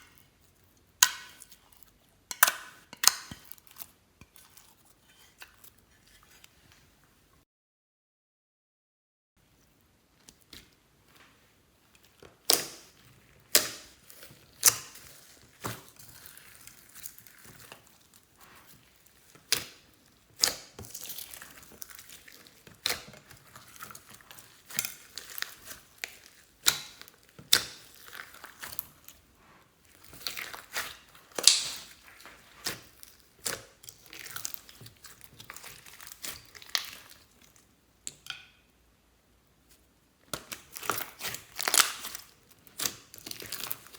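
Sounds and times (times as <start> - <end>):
slime squished by hand: 12.0 - 29.2, 29.8 - 37.6, 40.2 - 43.9.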